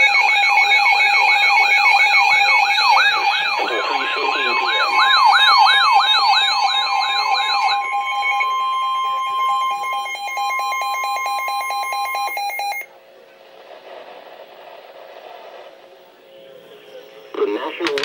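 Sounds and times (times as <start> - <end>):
wailing siren sweep: 0.0 - 12.3
two-tone alarm: 0.0 - 12.9.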